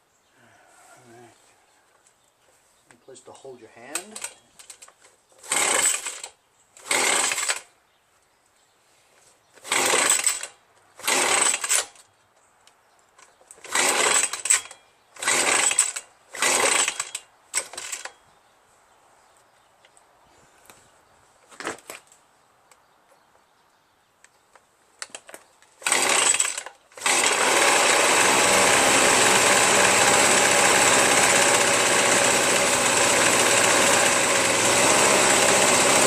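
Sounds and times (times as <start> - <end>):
recoil starter rope pulls: 3.9 - 7.7, 9.6 - 12.0, 13.5 - 18.2, 25.0 - 36.0.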